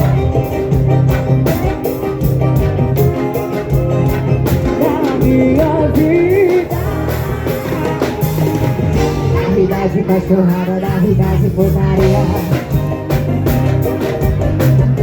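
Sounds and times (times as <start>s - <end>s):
party music with steady beat: 0.0s - 15.0s
person singing: 4.5s - 12.9s.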